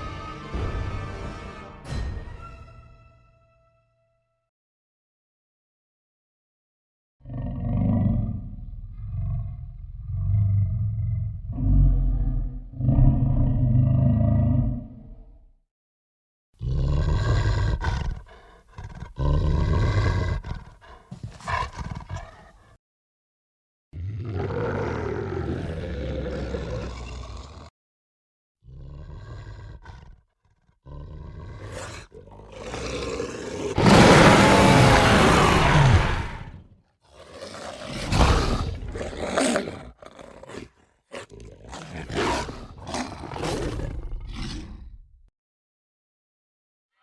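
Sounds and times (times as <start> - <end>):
creature roars and growls: 7.2 - 15.4, 24.0 - 27.7, 30.8 - 45.1.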